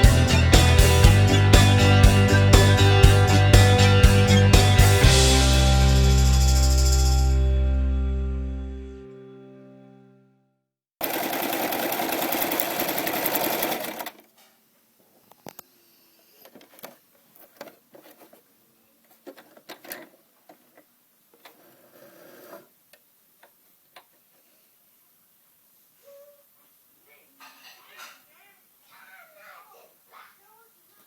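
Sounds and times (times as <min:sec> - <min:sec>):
sewing machine stitching: 0:11.0 - 0:14.3, 0:21.4 - 0:22.7.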